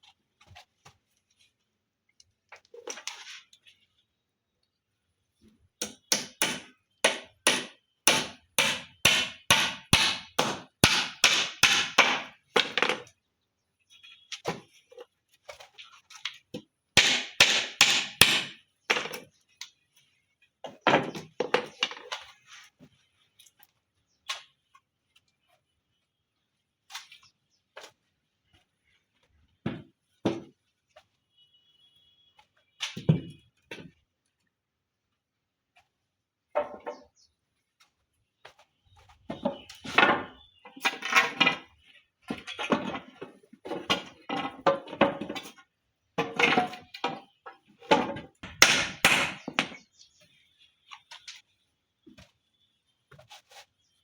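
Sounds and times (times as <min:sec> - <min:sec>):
hammer driving nails into timber: 0:05.8 - 0:12.7, 0:17.0 - 0:19.2, 0:48.4 - 0:49.8.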